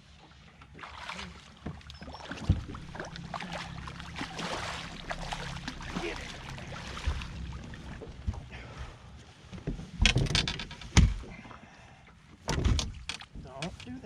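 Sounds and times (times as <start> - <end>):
water splashing: 0.3 - 9.1
steady low hum: 0.7 - 12.4.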